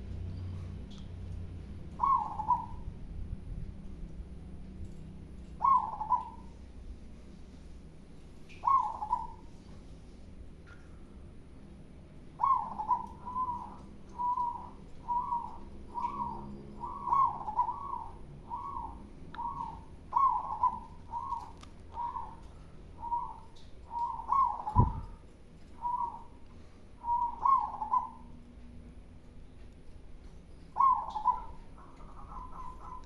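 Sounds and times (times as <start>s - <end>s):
dove cooing: 1.9s - 3.1s, 5.5s - 6.6s, 8.5s - 9.8s, 12.3s - 26.4s, 27.0s - 28.4s, 30.6s - 33.0s.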